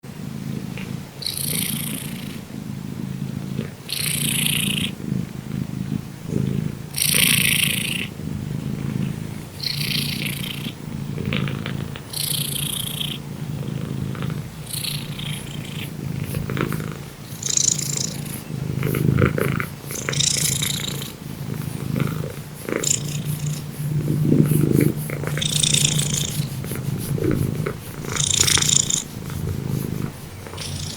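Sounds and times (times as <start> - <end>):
cat snoring: 0.2 - 30.9.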